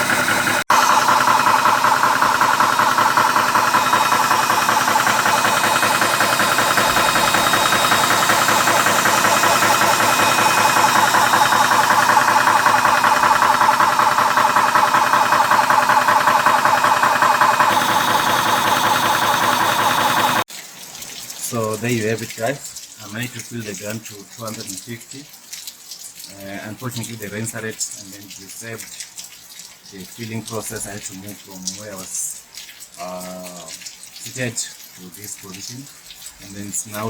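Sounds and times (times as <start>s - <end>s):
air compressor pumping: 0.0s - 20.5s.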